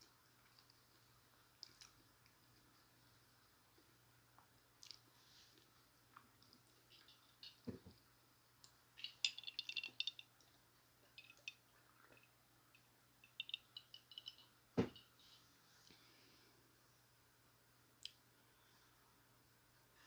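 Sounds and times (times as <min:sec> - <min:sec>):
chewing crunches and moist clicks: 0:00.0 - 0:03.0, 0:04.4 - 0:07.5.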